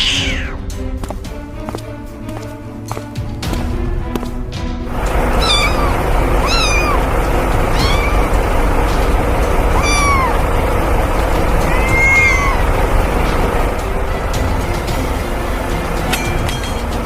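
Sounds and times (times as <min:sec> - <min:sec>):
cat meowing: 0:00.0 - 0:00.6, 0:05.2 - 0:07.1, 0:07.7 - 0:08.4, 0:09.7 - 0:10.4, 0:11.6 - 0:12.8.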